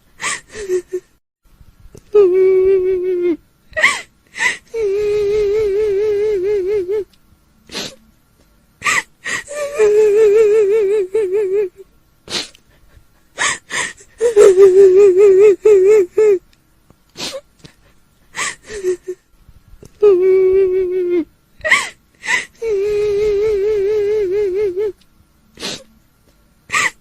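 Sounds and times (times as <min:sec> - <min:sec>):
woman wailing: 0:02.2 - 0:04.0, 0:08.8 - 0:11.8, 0:13.4 - 0:16.4, 0:20.0 - 0:21.8, 0:22.6 - 0:25.0
sharp gasping breaths: 0:12.3 - 0:14.2, 0:25.6 - 0:25.9.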